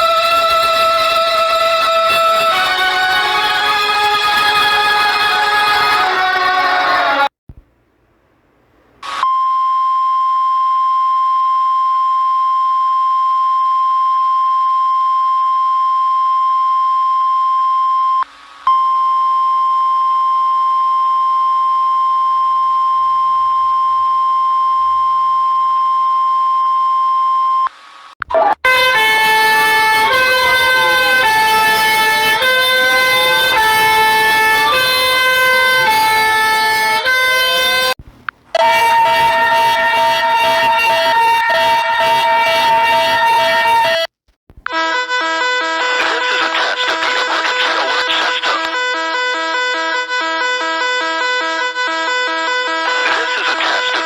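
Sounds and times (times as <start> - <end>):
stepping alarm tones with sweeps: 19.2 - 27.1, 38.6 - 44.1
steady electronic alarm tone: 19.4 - 27.1, 28.6 - 38.0, 38.6 - 44.1.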